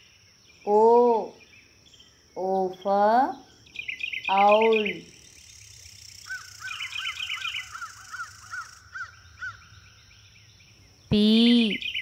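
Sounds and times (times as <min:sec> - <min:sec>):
birds and insects chirping: 0:00.0 - 0:12.0
owl tooting: 0:06.2 - 0:09.7.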